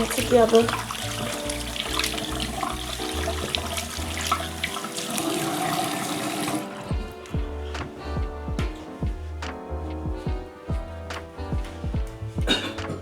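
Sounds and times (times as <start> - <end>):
background music with bass line: 0.0 - 4.8, 6.7 - 13.0
tap water splashing into sink: 0.0 - 7.2.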